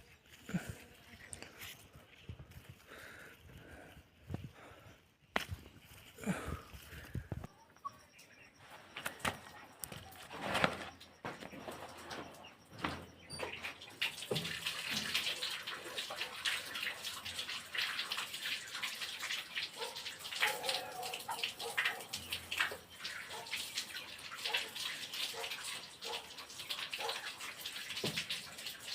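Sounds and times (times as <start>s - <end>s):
running splashing water: 8.2s - 28.9s.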